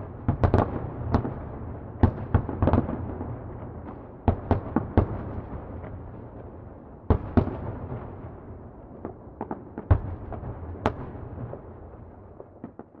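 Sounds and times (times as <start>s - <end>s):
distant fireworks exploding: 0.0s - 13.0s.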